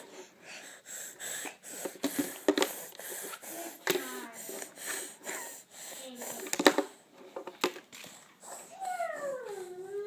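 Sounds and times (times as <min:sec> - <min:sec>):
toddler making motorcycle noises: 0:08.7 - 0:10.0.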